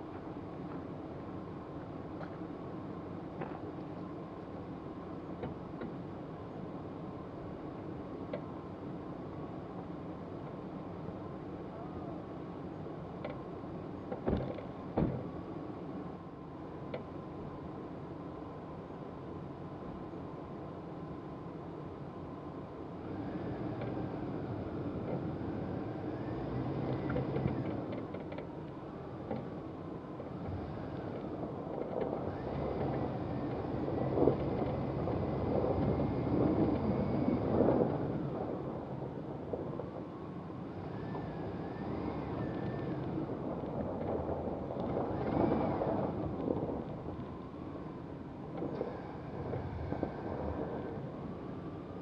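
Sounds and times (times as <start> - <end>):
engine rumble: 0.0 - 52.0
vehicle engine whine: 0.0 - 52.0
wind noise: 30.5 - 52.0.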